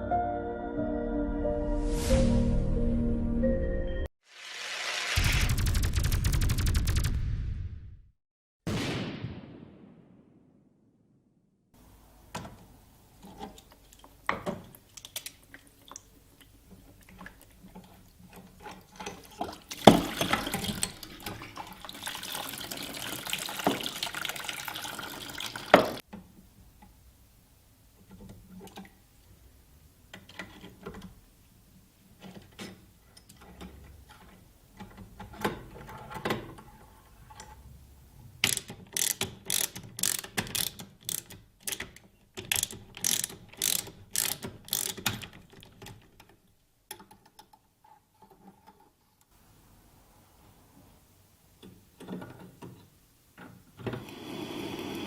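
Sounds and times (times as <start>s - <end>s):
hand tools clicking and knocking: 16.7s - 21.7s, 38.4s - 48.8s
water running: 19.0s - 26.0s
rapid ratchet clicking: 38.4s - 45.3s.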